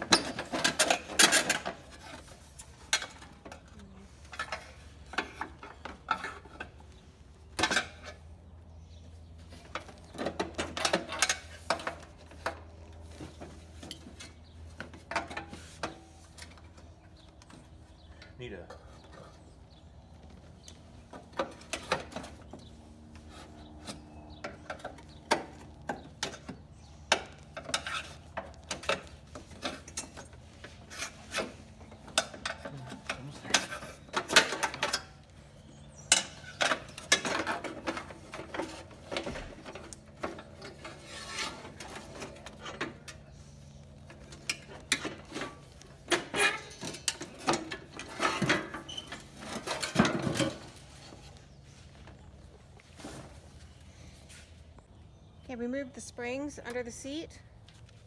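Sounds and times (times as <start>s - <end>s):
metal tools clinking and scraping: 0.0s - 6.8s, 27.3s - 43.4s, 44.0s - 51.3s.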